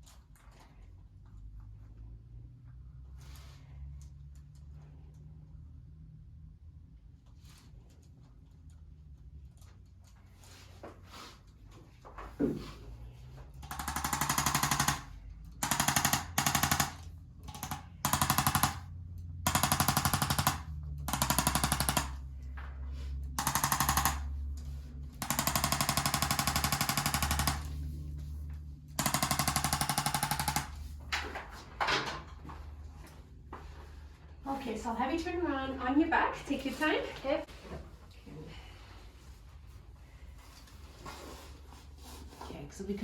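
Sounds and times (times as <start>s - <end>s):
percussion device hammering: 15.6s - 18.8s, 19.5s - 22.2s.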